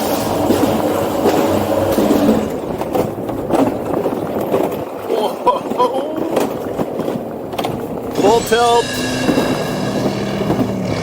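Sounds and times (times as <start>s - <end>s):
coaster wheels rumbling on track: 0.0s - 11.0s.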